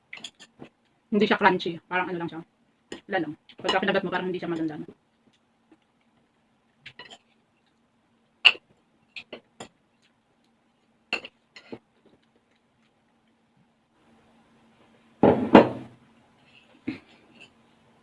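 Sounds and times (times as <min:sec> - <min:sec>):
utensils clinking against dish: 0:06.9 - 0:07.3.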